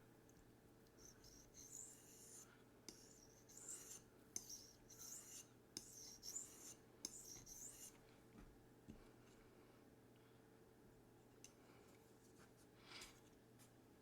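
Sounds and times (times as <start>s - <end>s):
knife scraping sharpening stone: 1.0s - 8.0s.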